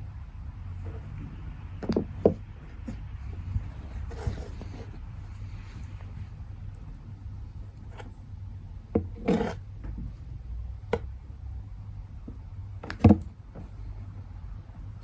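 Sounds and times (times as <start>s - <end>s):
low room hum: 0.0s - 15.0s
scraping rustle in cardboard box: 2.7s - 6.3s.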